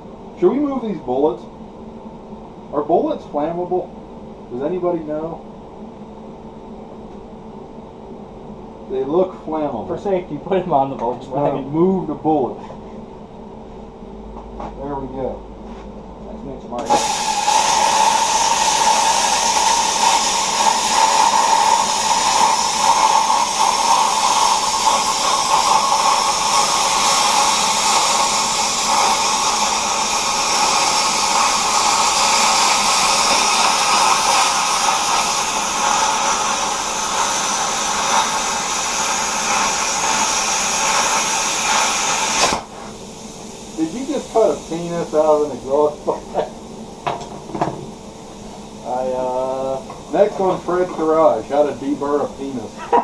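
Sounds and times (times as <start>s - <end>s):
plasma cutter hissing: 16.7s - 53.0s.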